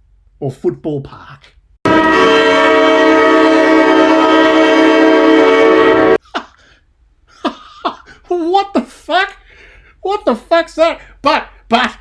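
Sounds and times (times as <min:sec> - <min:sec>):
stadium siren chord: 0:01.9 - 0:06.2.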